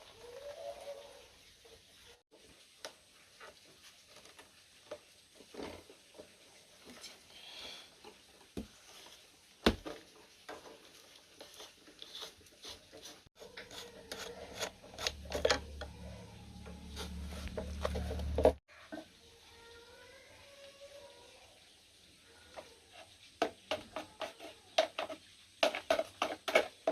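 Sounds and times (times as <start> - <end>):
small parts clicking and scraping: 10.4 - 18.6, 23.0 - 26.9
low motor hum: 15.0 - 18.6.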